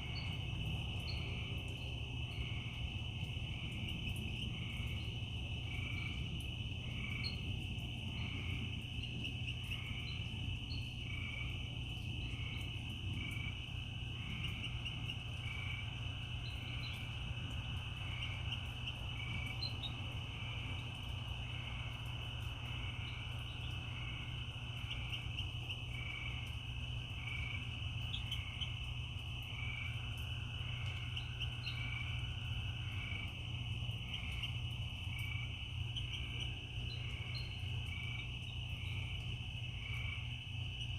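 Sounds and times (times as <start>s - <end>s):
crickets trilling: 0.0s - 40.9s
low steady rumble: 0.0s - 40.9s.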